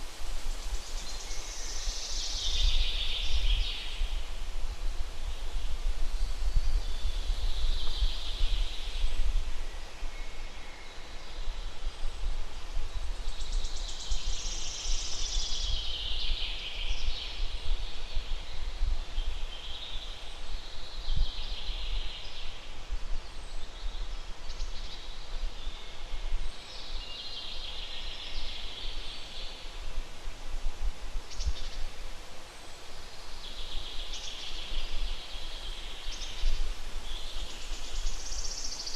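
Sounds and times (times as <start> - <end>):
wind buffeting microphone: 2.5 - 10.1.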